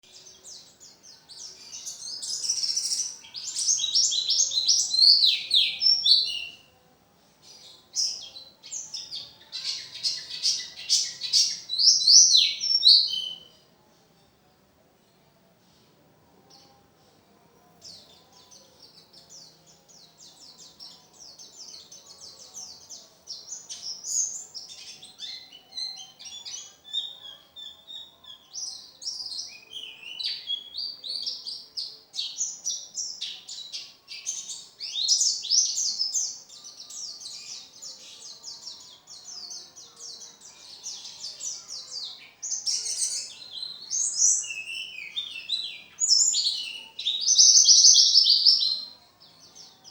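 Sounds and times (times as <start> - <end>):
bird chirping and trilling: 42.6 - 48.9.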